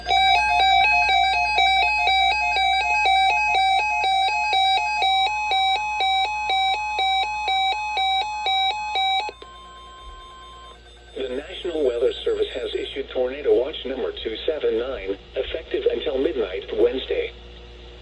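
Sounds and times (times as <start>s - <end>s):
two-pitch alert alarm beeping: 0.0s - 12.9s
steady high warning tone: 0.0s - 13.6s.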